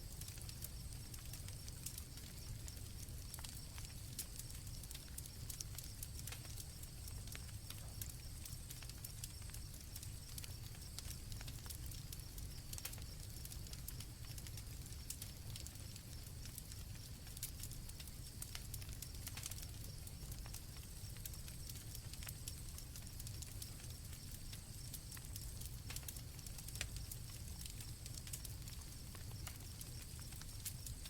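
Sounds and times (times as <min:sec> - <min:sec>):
campfire crackling and popping: 0:00.0 - 0:31.0
crickets trilling: 0:18.3 - 0:31.0.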